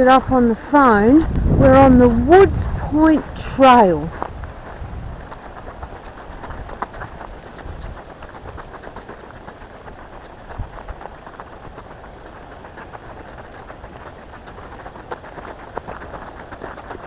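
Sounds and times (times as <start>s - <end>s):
microphone handling noise: 0.0s - 5.2s
wind rustling: 0.0s - 17.0s.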